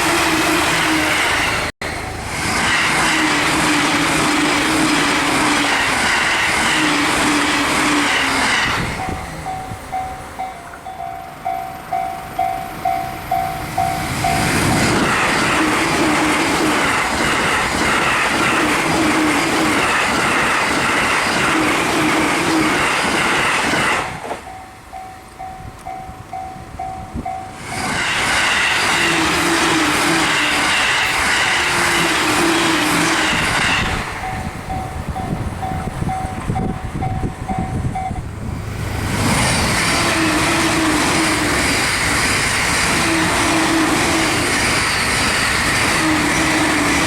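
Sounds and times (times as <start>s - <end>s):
train passing at high speed: 0.0s - 47.0s
level crossing warning bell: 1.8s - 2.3s, 9.0s - 15.0s, 24.4s - 27.7s, 31.1s - 38.3s.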